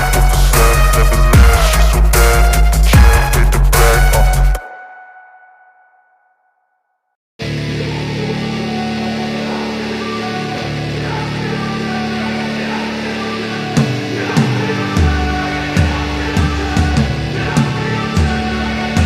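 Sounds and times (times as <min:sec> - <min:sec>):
steady drum beat: 0:00.0 - 0:04.6, 0:13.8 - 0:19.0
sustained guitar chords: 0:00.0 - 0:05.9, 0:07.4 - 0:19.0.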